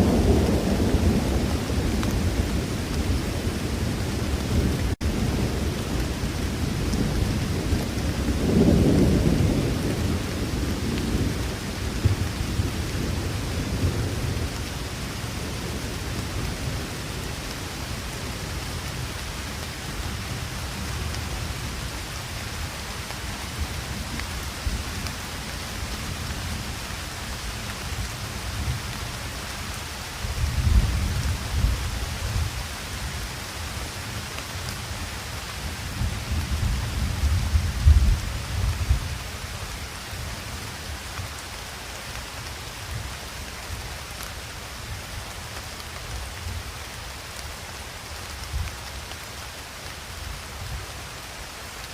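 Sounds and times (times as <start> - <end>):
distant thunder rumbling: 0.0 - 22.6
steady rain: 0.0 - 51.9.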